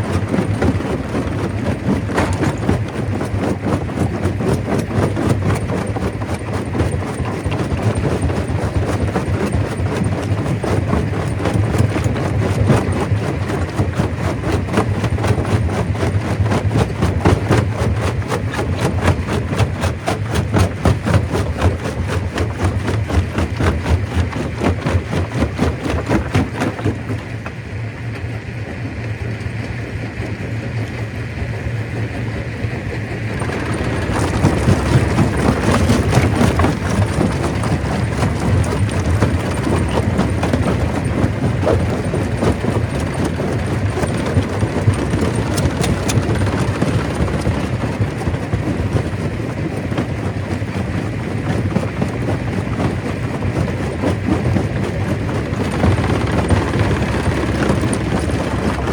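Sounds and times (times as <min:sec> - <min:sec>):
stone crusher machine hum: 0:00.0 - 0:27.3, 0:33.0 - 0:58.9
clatter of rock breaking: 0:33.3 - 0:58.9.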